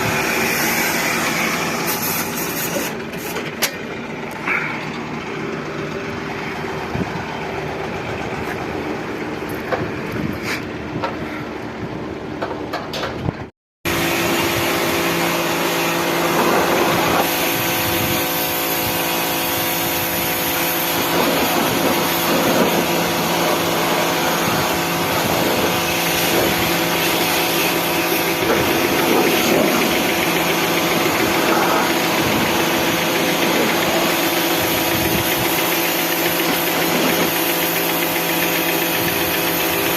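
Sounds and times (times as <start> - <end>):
hiss: 0.0 - 3.4, 16.5 - 39.9
motor humming: 13.9 - 39.9.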